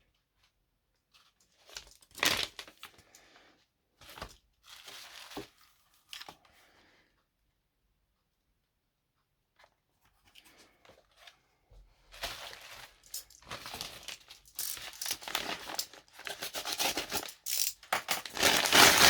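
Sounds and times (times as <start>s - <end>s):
packaging crinkling and tearing: 1.7s - 2.9s, 12.2s - 19.0s.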